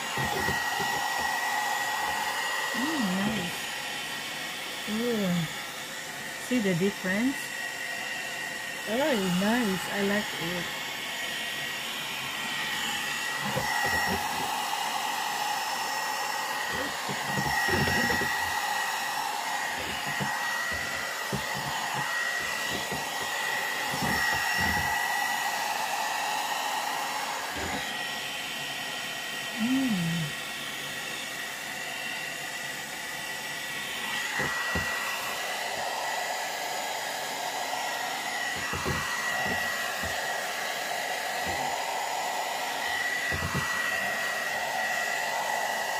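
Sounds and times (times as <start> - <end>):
hair dryer whining: 0.0 - 45.9.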